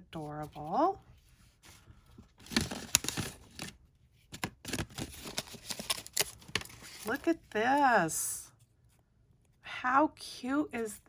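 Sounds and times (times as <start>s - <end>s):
packaging rustling and crinkling: 1.7s - 7.5s.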